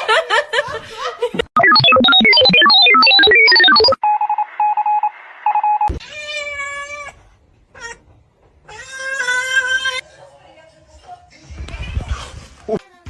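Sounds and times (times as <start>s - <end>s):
electronic tones jumping in pitch: 1.5s - 4.0s
short beeps: 1.6s - 5.9s.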